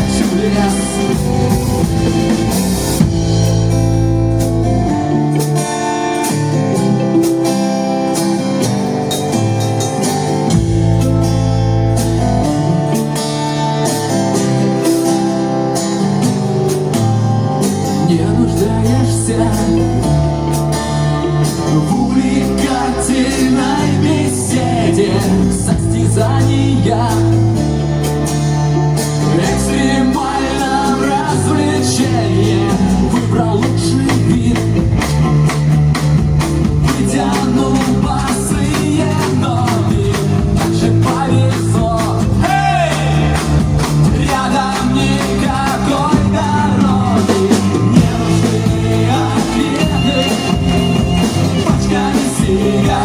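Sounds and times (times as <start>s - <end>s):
person singing: 0.0s - 2.6s, 29.2s - 35.1s, 36.8s - 53.0s
live rock band playing: 0.0s - 53.0s.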